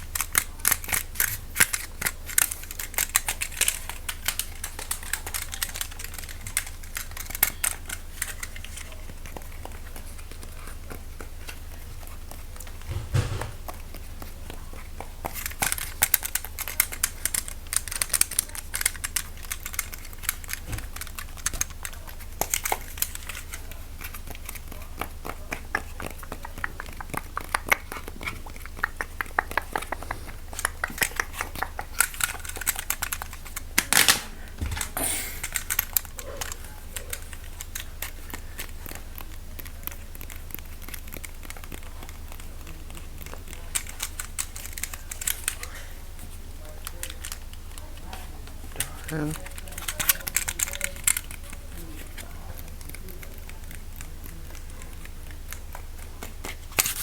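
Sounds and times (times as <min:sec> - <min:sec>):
small clicks and taps: 0:12.3 - 0:45.7
low thud: 0:12.9 - 0:13.8.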